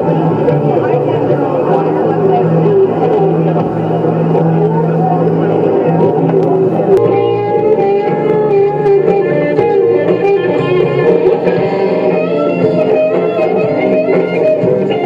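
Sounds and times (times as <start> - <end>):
guitar music: 0.0 - 15.0.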